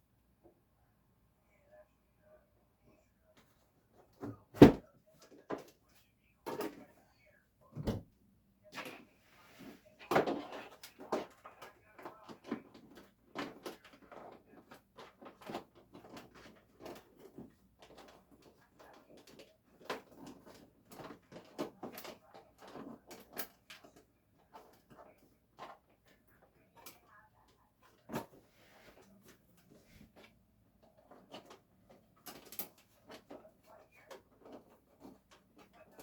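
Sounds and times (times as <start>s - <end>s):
clicks and knocks of handling: 27.8s - 36.0s.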